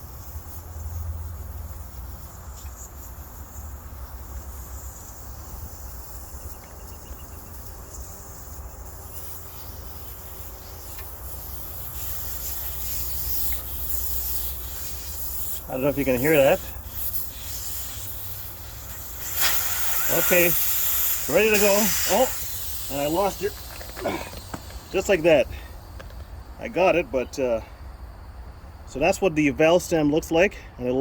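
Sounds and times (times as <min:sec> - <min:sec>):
air hissing from tyre valve: 0:00.0 - 0:28.9.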